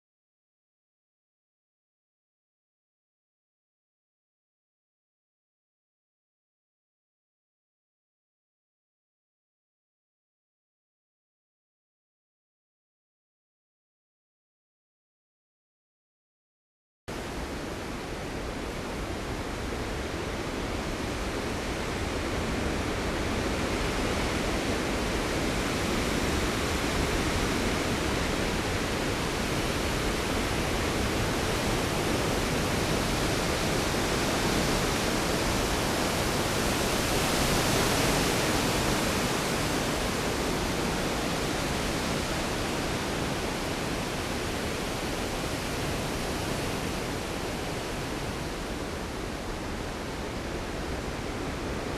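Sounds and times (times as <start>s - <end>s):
rain and wind rushing: 17.1s - 51.9s.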